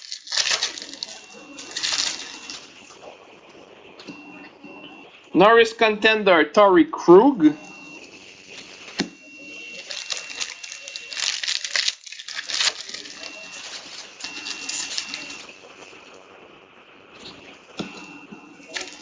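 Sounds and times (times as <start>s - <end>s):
card pack wrapper crinkling: 0.0s - 2.6s, 9.7s - 15.5s, 18.7s - 19.0s
cards being shuffled: 9.8s - 15.4s.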